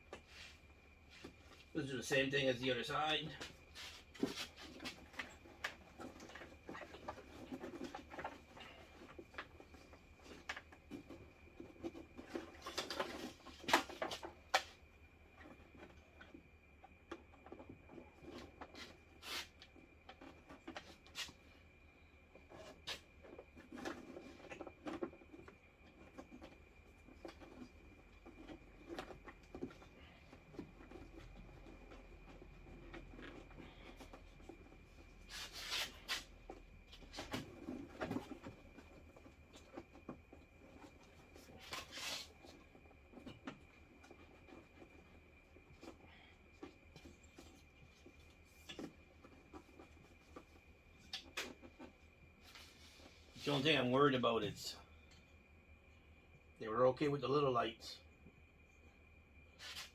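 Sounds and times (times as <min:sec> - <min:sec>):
hands handling wiring and tape: 0:03.4 - 0:21.4.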